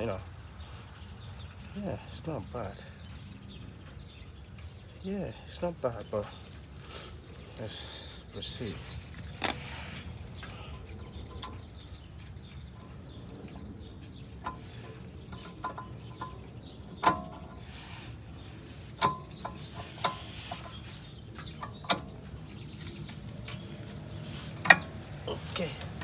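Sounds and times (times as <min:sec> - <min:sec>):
metallic clicks and knocks: 0:10.4 - 0:17.7, 0:18.9 - 0:25.2.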